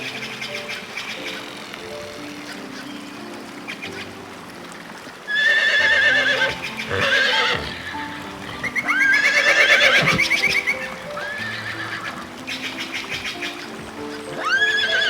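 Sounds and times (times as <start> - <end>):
background music: 0.0 - 15.0
horse whinnying: 5.3 - 12.2, 14.3 - 15.0.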